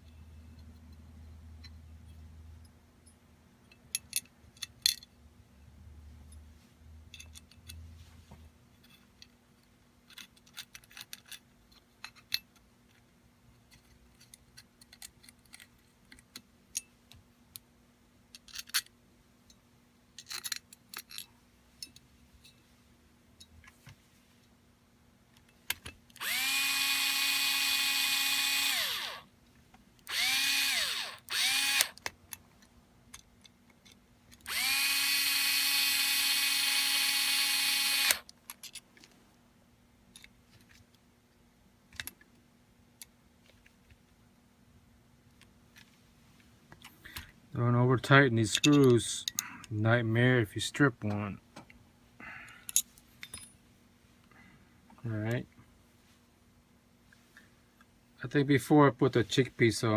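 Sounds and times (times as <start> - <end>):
small metal parts clicking: 3.7 - 5.1, 7.1 - 7.8, 10.0 - 13.0, 13.7 - 16.9, 18.3 - 18.9, 20.2 - 22.0, 30.0 - 39.1
power driver whining: 26.2 - 29.2, 30.0 - 32.0, 34.4 - 38.2.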